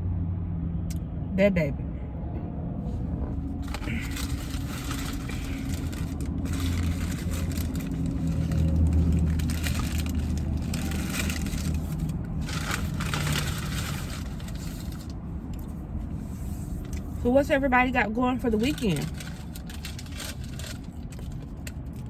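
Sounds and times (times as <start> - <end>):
low vehicle rumble: 0.0 - 22.0
paper wrapper crinkling: 3.4 - 17.2, 18.5 - 22.0.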